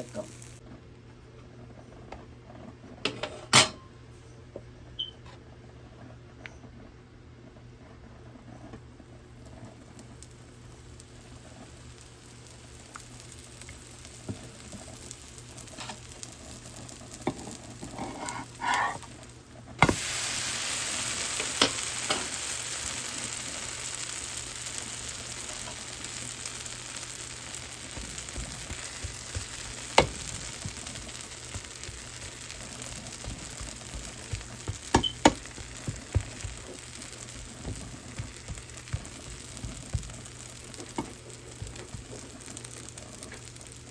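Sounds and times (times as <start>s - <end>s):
dosa sizzling in a hot pan: 0.0s - 0.6s, 9.1s - 43.9s.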